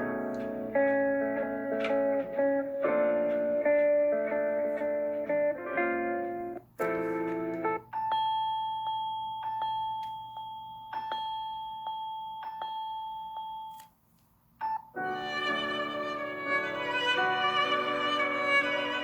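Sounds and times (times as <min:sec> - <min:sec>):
bell-like electronic ringtone: 0:07.8 - 0:13.8
string-like ringtone melody: 0:14.9 - 0:19.0.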